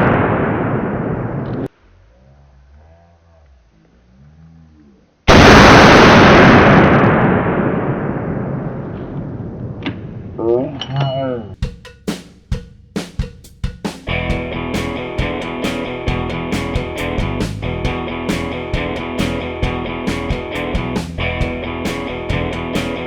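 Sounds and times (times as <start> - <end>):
rock song with drums and guitar: 11.6 - 23.0
sharp drum hits: 11.6 - 23.0.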